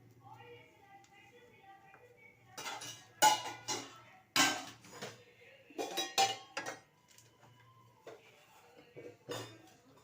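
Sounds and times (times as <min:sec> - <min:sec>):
metal utensil clinking on cookware: 0:02.6 - 0:05.2, 0:05.8 - 0:06.9, 0:08.9 - 0:10.0.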